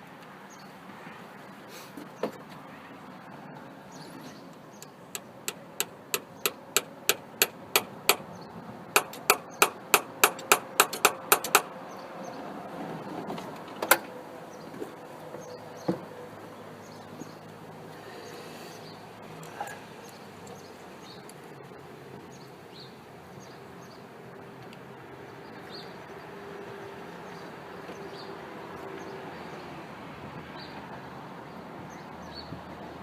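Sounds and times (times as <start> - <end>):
hammer striking metal: 5.2 - 8.3, 9.0 - 11.7.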